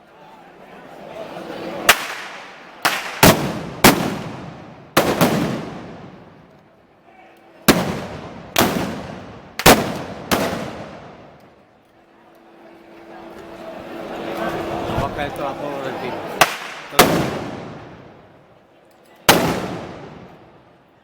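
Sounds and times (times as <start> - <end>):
loud gunpowder bangs echoing: 1.9 - 6.3, 7.7 - 11.4, 16.4 - 18.2, 19.3 - 20.5.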